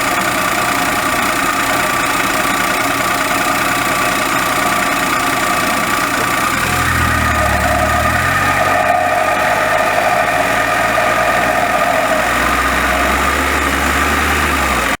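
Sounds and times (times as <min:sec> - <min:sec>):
car engine pulling away: 0:00.0 - 0:15.0
steady rubbing noise: 0:03.0 - 0:14.8.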